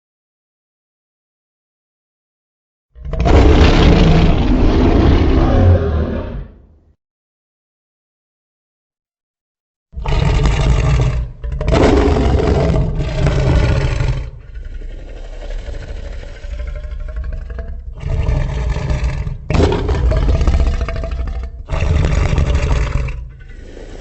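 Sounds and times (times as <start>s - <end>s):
monster roaring: 3.0s - 6.7s, 10.0s - 24.0s
low growling: 3.0s - 6.8s, 10.0s - 24.0s.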